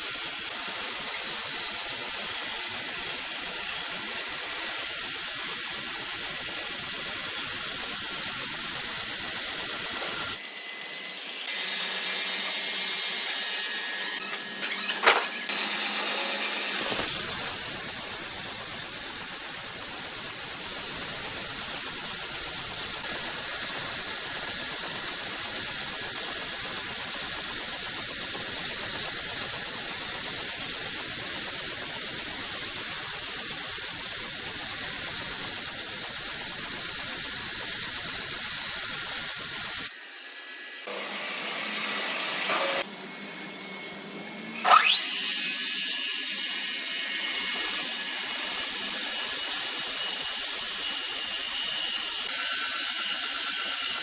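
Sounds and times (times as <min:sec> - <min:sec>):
woodworking machinery whirring: 0:06.5 - 0:25.9, 0:38.9 - 0:54.0
short rising-pitch sound: 0:44.6 - 0:45.6.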